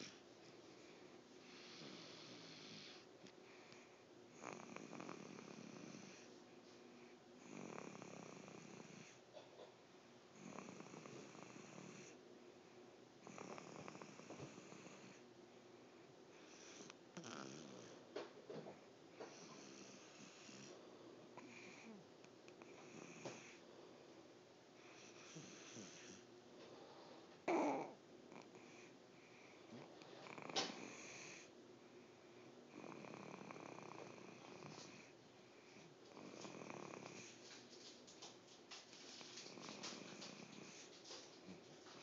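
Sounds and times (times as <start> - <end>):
person snoring faintly: 0.8 - 6.4, 10.4 - 12.2, 16.4 - 18.1, 18.7 - 20.8, 22.6 - 23.6, 24.8 - 31.5, 32.7 - 37.6, 39.0 - 42.0.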